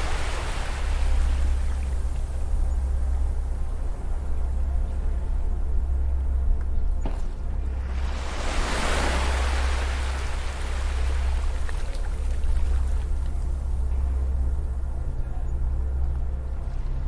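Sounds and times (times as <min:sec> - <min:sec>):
steady low rumble: 0:00.0 - 0:17.0
sea wave breaking on beach: 0:07.9 - 0:11.8.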